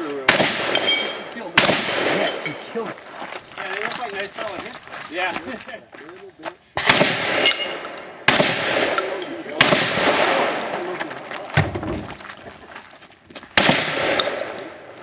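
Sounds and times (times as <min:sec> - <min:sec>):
shotgun blasts echoing: 0:00.2 - 0:02.6, 0:06.8 - 0:11.0, 0:13.6 - 0:14.9
dull thump: 0:11.6 - 0:12.2.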